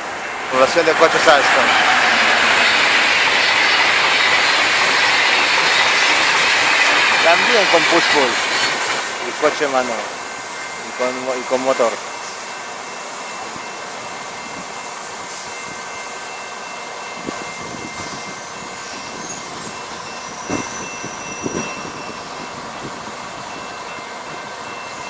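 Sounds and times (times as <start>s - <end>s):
train wheels rumbling on track: 0.0s - 25.0s
wheels clacking over rail joints: 0.4s - 10.2s.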